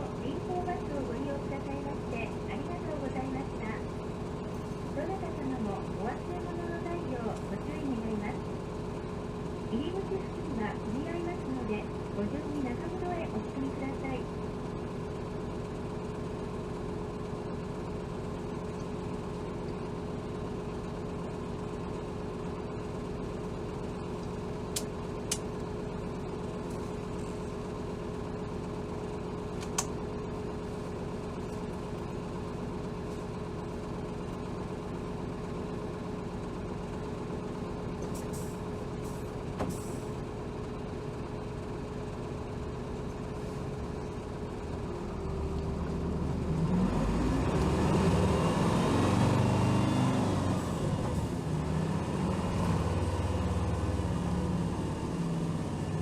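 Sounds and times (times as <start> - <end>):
bus diesel engine whine and rumble: 0.0 - 56.0
sharp clicks: 29.6 - 29.9.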